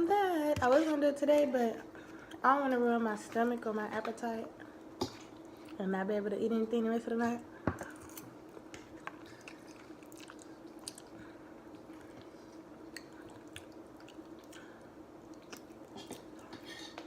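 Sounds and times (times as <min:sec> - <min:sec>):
faint steady hum: 0:00.0 - 0:17.0
wet chewing sounds: 0:08.7 - 0:17.0.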